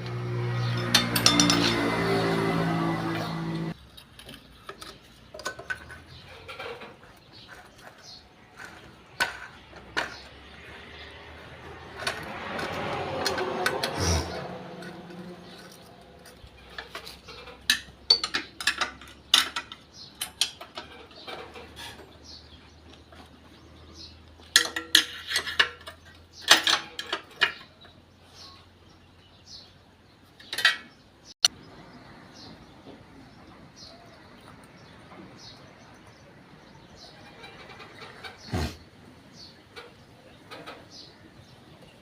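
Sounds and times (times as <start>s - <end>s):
metal tools clinking: 0.6s - 22.4s, 24.4s - 27.9s.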